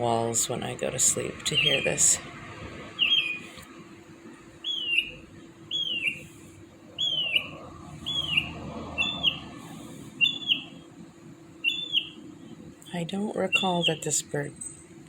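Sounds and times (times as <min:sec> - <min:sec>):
bird whistled call: 0:03.0 - 0:03.6, 0:04.6 - 0:06.3, 0:07.0 - 0:09.5, 0:10.2 - 0:10.8, 0:11.6 - 0:12.2.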